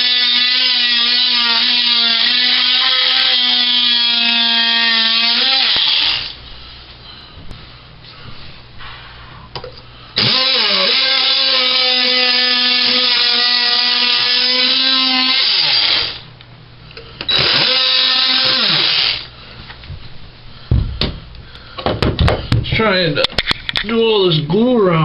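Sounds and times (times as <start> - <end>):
oscillating multi-tool whine: 0.0 - 6.4, 10.2 - 16.3, 17.3 - 19.3.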